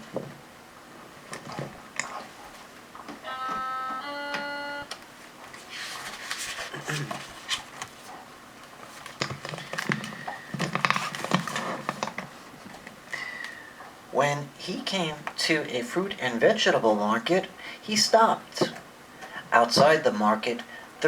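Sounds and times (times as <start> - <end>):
soft voice sounds: 3.2 - 4.9
electronic tones: 3.2 - 5.0.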